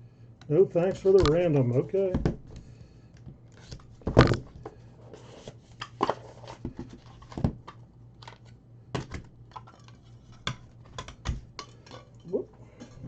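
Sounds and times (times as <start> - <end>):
low steady hum: 0.0 - 13.0
cards crinkling and tapping: 0.9 - 1.6.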